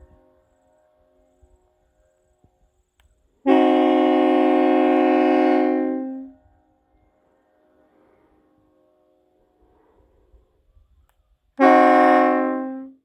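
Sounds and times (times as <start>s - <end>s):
train horn blast: 0.0s - 1.3s, 3.4s - 6.6s, 11.6s - 13.0s.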